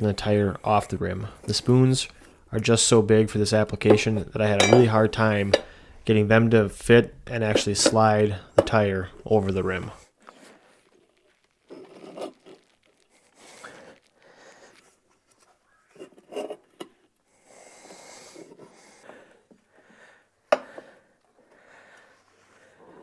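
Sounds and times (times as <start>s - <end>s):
tire spoons scraping rubber: 0.0s - 10.9s.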